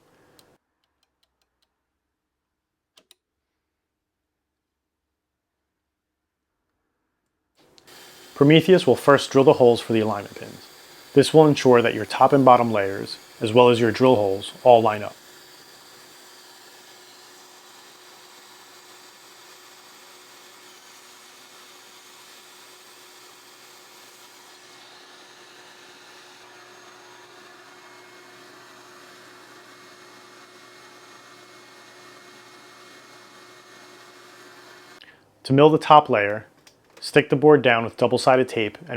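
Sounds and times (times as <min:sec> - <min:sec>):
milling machine spindle hissing: 0:07.8 - 0:35.0.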